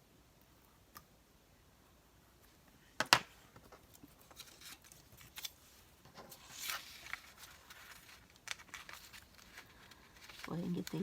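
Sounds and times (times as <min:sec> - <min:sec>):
soft paper rustle: 0:03.4 - 0:11.0.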